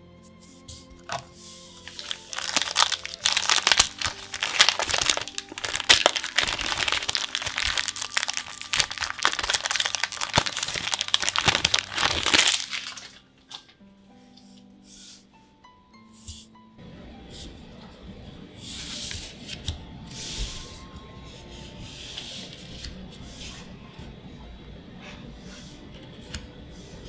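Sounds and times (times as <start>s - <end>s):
soft background music: 0.0s - 27.0s
foil wrapper crinkling and tearing: 1.8s - 13.2s.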